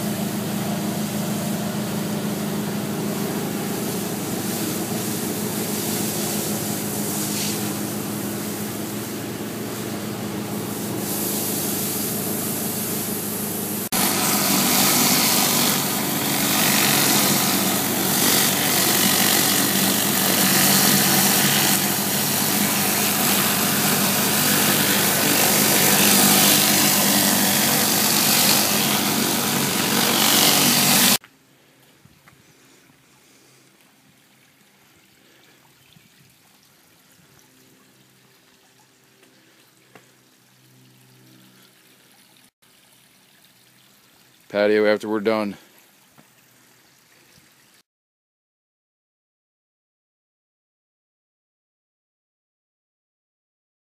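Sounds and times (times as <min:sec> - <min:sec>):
pressure washer engine running: 0:00.0 - 0:31.2
water spray hissing on pavers: 0:00.0 - 0:31.2.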